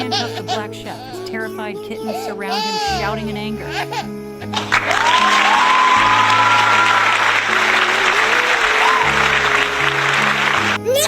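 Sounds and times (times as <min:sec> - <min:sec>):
background music: 0:00.0 - 0:11.0
crowd applauding and cheering: 0:04.5 - 0:11.0.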